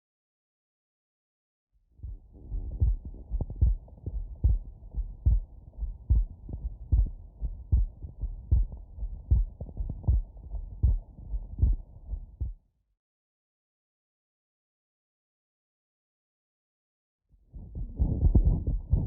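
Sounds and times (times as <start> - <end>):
heartbeat through stethoscope: 2.0 - 12.6, 17.5 - 19.0.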